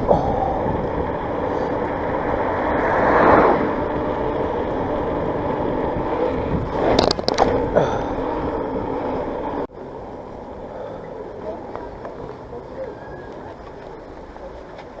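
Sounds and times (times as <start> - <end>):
wind on microphone: 0.0 - 9.4
bike tyres rolling: 0.0 - 15.0
sharp clicks and rattles: 4.2 - 7.8.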